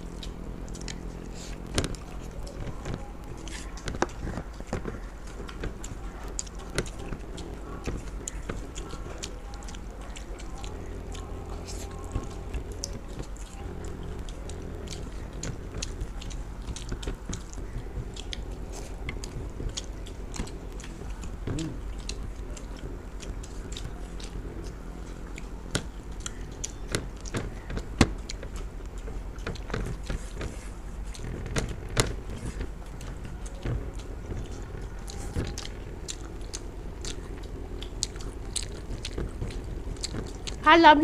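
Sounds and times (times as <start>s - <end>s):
mouth clicks and smacks: 0.0s - 41.0s
people chewing food: 0.0s - 41.0s
steady low hum: 0.0s - 41.0s.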